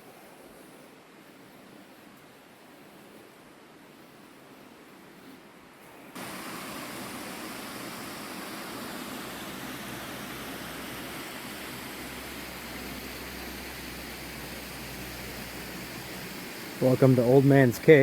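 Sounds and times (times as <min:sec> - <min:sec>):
faint hiss: 0:00.0 - 0:18.0
running water rushing: 0:06.2 - 0:18.0.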